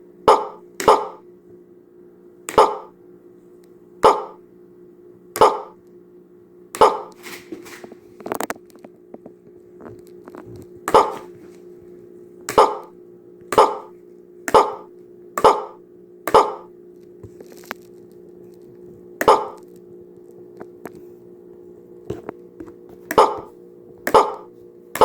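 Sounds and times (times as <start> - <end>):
steady hum: 0.0 - 25.0.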